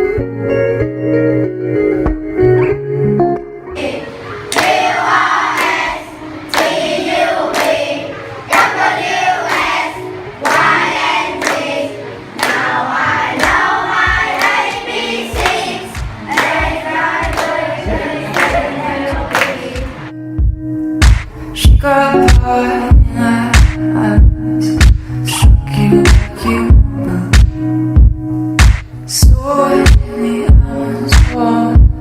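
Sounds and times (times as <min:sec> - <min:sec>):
group of voices singing: 0:03.7 - 0:20.1, 0:24.6 - 0:27.4, 0:29.1 - 0:32.0
strong beat: 0:13.4 - 0:32.0.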